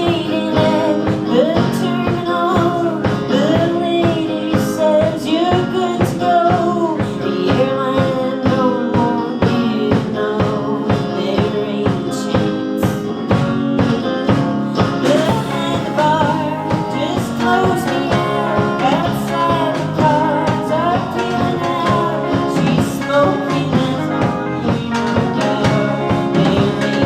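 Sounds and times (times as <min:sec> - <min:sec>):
guitars and bass: 0:00.0 - 0:27.0
drum kit beat: 0:15.0 - 0:23.0
person singing: 0:15.0 - 0:24.4.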